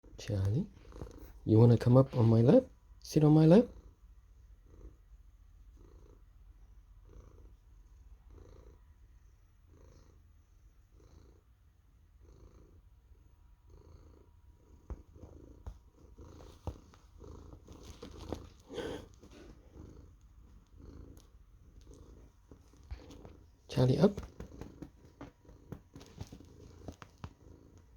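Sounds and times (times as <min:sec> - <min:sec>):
cat purring: 0:00.0 - 0:27.9
rustling: 0:14.8 - 0:27.9.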